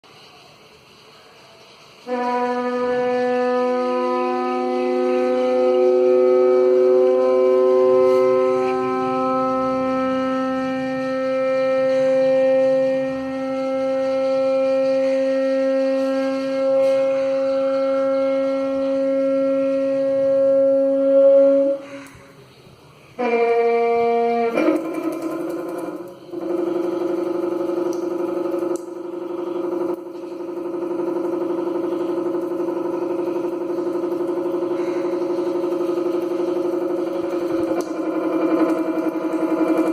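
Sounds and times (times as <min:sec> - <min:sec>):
water tap hooting: 0:23.2 - 0:39.9.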